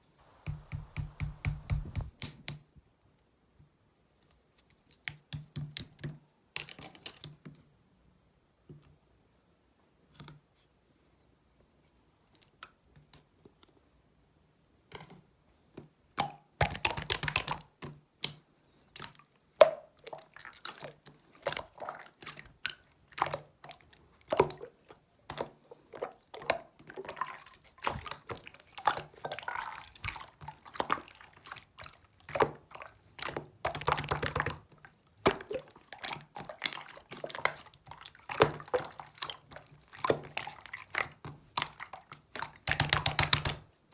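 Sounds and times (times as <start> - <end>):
wet liquid sounds: 25.9 - 32.0, 35.5 - 42.5.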